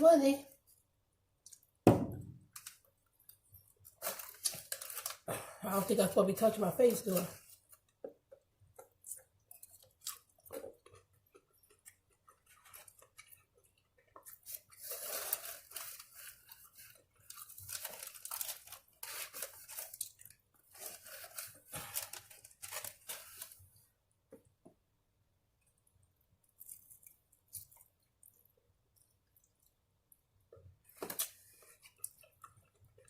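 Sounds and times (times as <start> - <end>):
person chewing crunchy food: 8.7 - 23.6.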